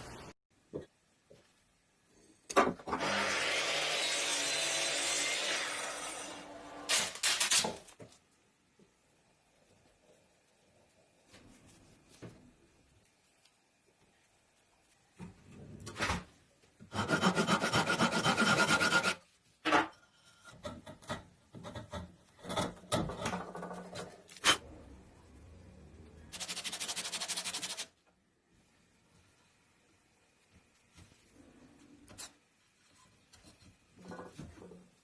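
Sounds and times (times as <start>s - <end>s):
tool rasping against wood: 16.9s - 19.2s
knocks and scraping: 19.6s - 24.6s, 30.6s - 35.0s.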